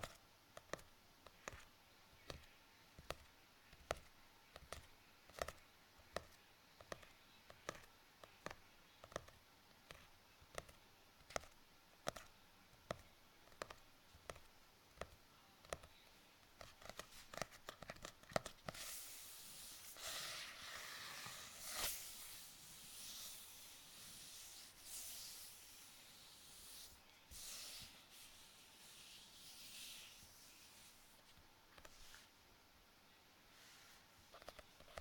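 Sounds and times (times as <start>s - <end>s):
soft swishing rubbing: 18.7s - 32.4s.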